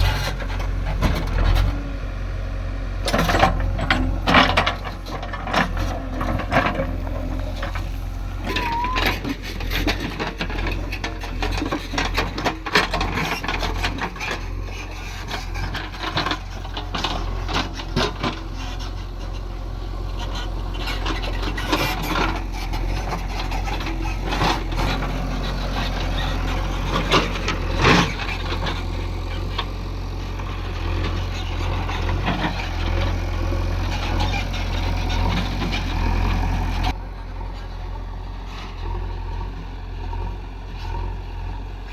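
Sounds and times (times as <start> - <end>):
diesel engine running: 0.0 - 41.9
scrapes and knocks: 3.1 - 18.9.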